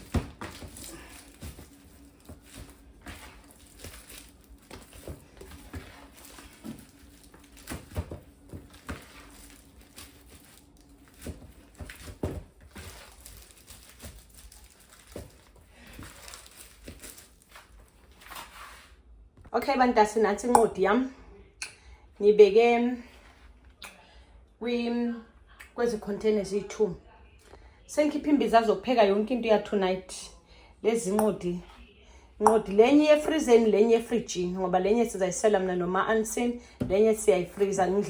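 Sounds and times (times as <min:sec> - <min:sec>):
hands working bread dough: 0:00.0 - 0:19.0, 0:35.6 - 0:38.0.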